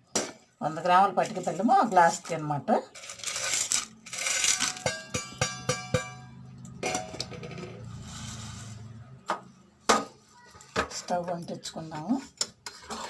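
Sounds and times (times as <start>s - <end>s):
sugar pieces rattling into pan: 1.9s - 5.1s.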